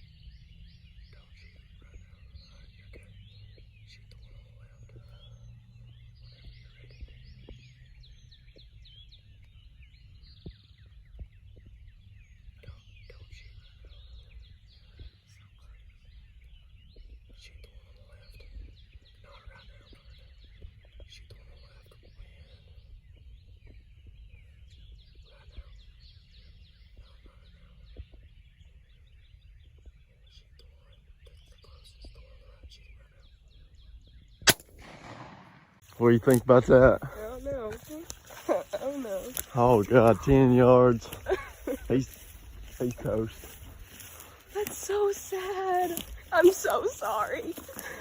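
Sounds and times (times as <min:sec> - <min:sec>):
songbirds chirping and whistling: 0:00.0 - 0:48.0
steady low rumble: 0:00.0 - 0:48.0.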